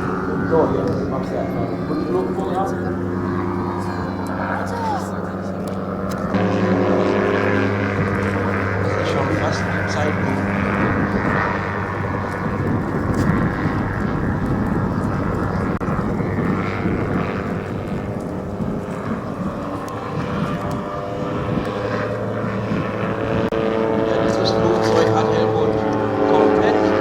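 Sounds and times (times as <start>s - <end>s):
model airplane engine and propeller: 0.0s - 27.0s.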